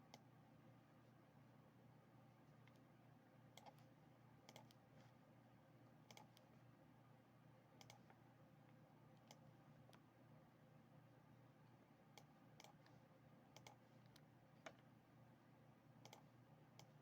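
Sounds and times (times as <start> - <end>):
computer mouse clicks: 0.1 - 0.3, 3.6 - 4.9, 6.1 - 6.5, 7.8 - 8.2, 9.2 - 10.1, 12.2 - 14.9, 16.0 - 17.0.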